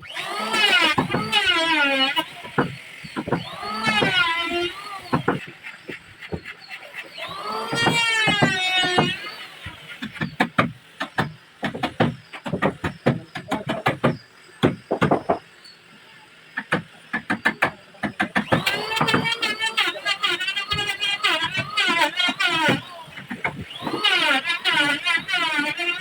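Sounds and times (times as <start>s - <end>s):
sharp knocks and taps: 10.0s - 15.4s.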